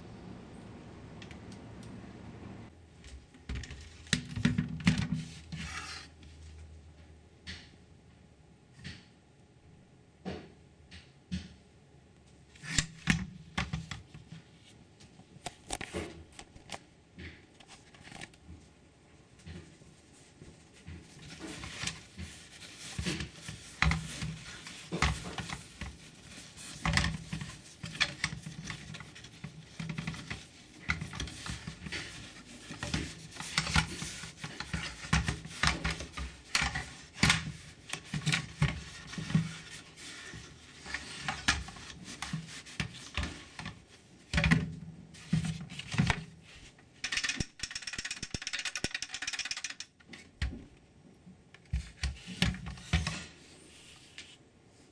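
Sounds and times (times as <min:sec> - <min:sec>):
objects rubbing scraping and tapping: 0:19.4 - 0:50.2.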